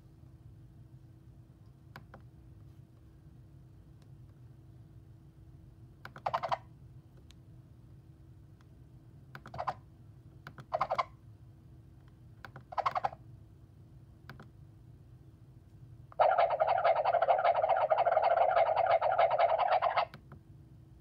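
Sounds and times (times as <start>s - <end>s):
cartoon rapid clicks: 16.2s - 20.2s.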